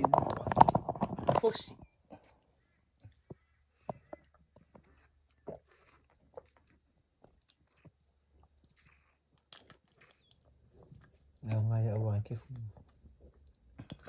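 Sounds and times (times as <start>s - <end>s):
person chewing food: 0.2s - 11.6s, 12.5s - 14.0s
mouth clicks and smacks: 3.0s - 11.6s.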